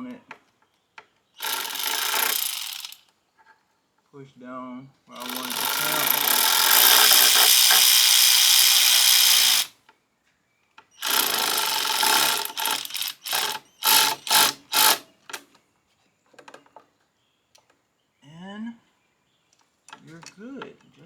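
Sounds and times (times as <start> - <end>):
cordless drill driving screw: 1.4 - 3.0, 5.2 - 9.7, 11.0 - 15.4.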